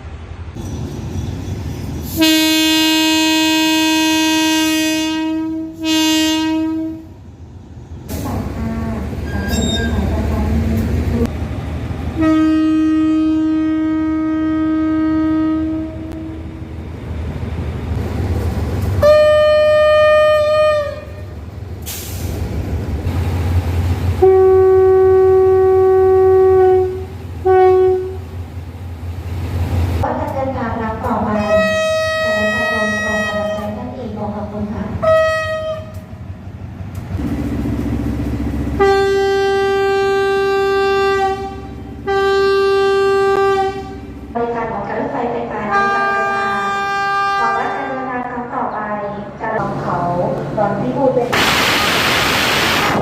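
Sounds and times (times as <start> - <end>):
train rumbling: 0.0 - 53.0
train horn blasts: 2.2 - 7.2, 8.6 - 10.1, 12.2 - 16.4, 19.0 - 21.4, 24.2 - 28.4, 31.2 - 34.0, 35.0 - 36.1, 38.8 - 44.2, 45.6 - 48.3.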